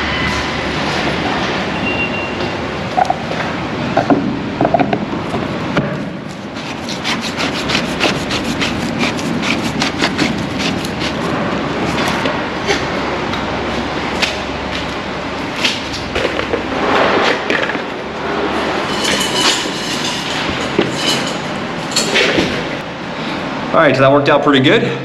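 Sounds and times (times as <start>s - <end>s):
tools rubbing and scraping: 6.3s - 13.0s, 15.7s - 22.8s.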